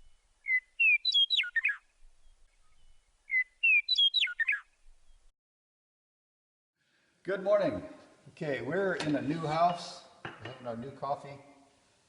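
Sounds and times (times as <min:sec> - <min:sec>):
songbird singing: 0:00.0 - 0:05.3.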